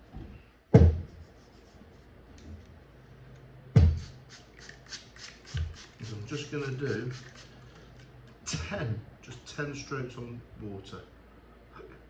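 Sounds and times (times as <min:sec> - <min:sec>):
razor scraping on whetstone: 0:04.6 - 0:07.5.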